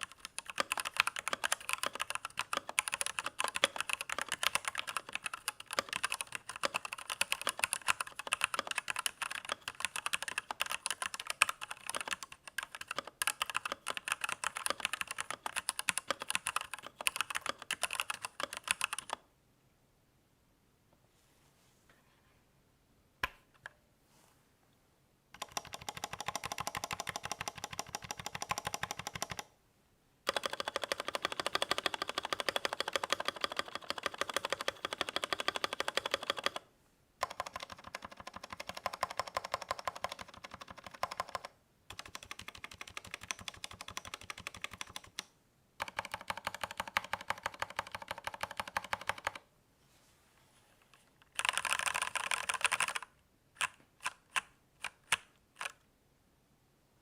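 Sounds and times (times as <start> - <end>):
mechanical keyboard typing: 0.0 - 19.2, 25.4 - 29.5, 30.3 - 36.6, 37.2 - 49.4, 51.3 - 55.8.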